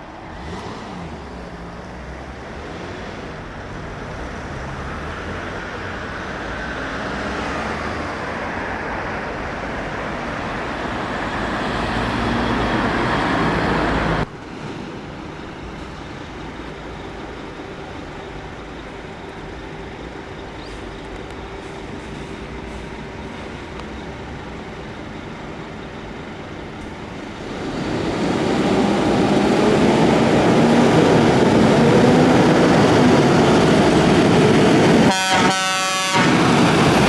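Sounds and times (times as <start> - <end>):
steady traffic noise: 0.0 - 37.0
large vehicle engine passing: 0.2 - 35.1.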